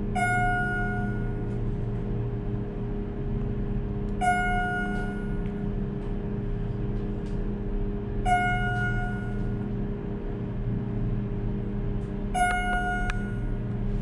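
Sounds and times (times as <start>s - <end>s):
elevator pump motor hum: 0.0s - 14.0s
elevator chime ding: 0.1s - 1.7s, 4.2s - 5.8s, 8.2s - 9.7s, 12.3s - 13.8s.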